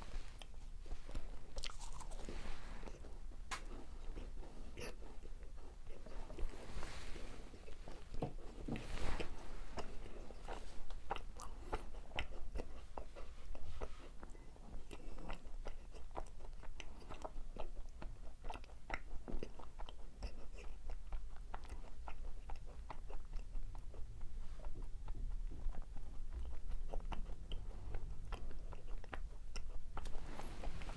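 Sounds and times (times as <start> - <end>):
crisp chewing crackles: 0.3 - 6.6
biting into macaron: 1.6 - 2.3.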